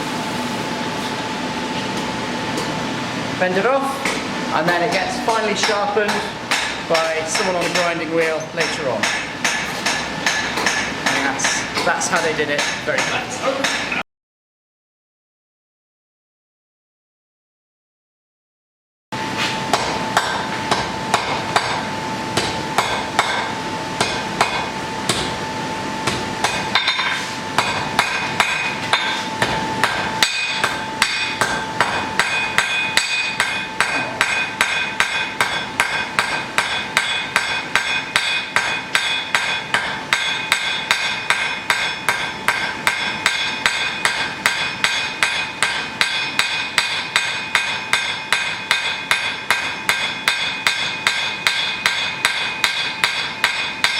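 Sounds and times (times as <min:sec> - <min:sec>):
hammer striking iron on anvil: 0:04.9 - 0:14.0, 0:19.7 - 0:25.4, 0:26.0 - 0:53.9.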